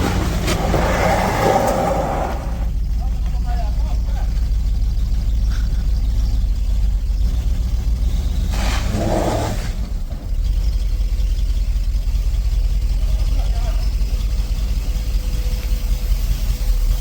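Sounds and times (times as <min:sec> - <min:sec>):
low engine rumble: 0:00.0 - 0:17.0
burst of hiss: 0:08.5 - 0:09.6.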